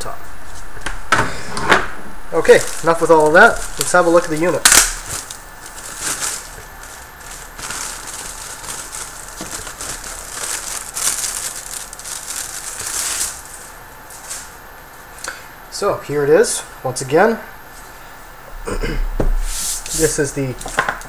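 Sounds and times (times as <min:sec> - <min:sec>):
packaging rustling and crinkling: 0:02.3 - 0:15.3.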